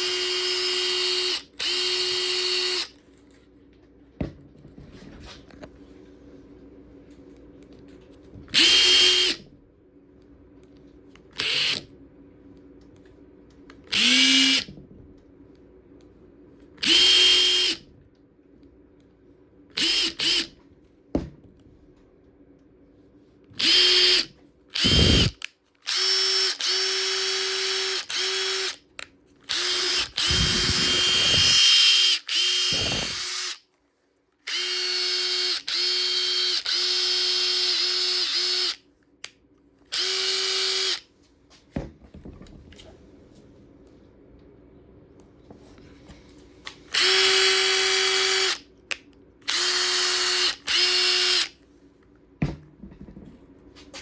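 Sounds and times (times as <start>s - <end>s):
impact driver motor whine: 0.0s - 2.9s, 8.5s - 9.4s, 13.9s - 14.7s, 16.8s - 17.8s, 23.6s - 28.8s, 29.5s - 33.6s, 34.5s - 38.8s, 39.9s - 41.0s, 46.9s - 48.6s, 49.5s - 51.5s.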